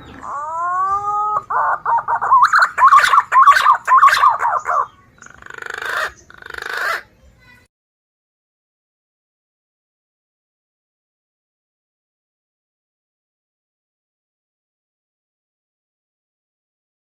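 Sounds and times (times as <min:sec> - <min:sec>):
pigeon chick calling: 0:00.0 - 0:07.1.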